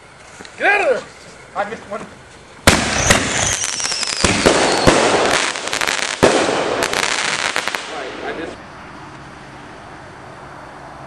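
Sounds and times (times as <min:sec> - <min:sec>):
firework crackling: 0:00.8 - 0:08.6
firework bangs: 0:02.6 - 0:08.6
falling firework whistle: 0:02.7 - 0:07.8.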